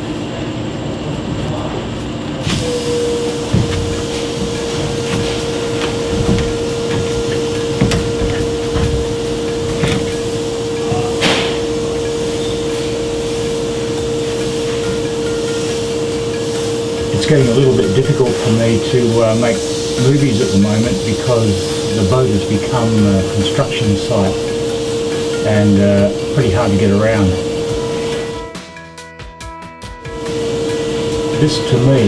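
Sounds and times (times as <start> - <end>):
mechanical hum: 0.0 - 28.8, 29.8 - 32.0
constant tone: 1.5 - 28.7
knocks and clicks: 3.4 - 11.6.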